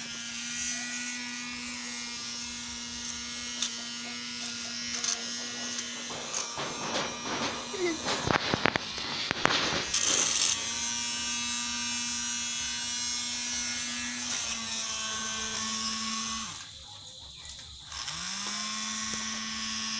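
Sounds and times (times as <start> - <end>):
vacuum cleaner motor humming: 0.0 - 16.7, 17.8 - 19.9
knocks and clicks: 5.0 - 10.6.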